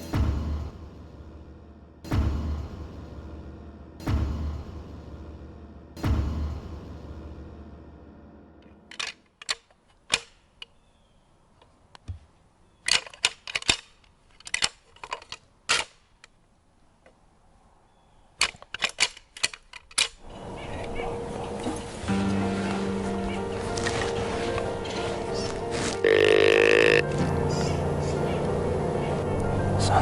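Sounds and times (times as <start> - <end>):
deer antlers clacking together: 12.8 - 16.4, 18.4 - 20.2.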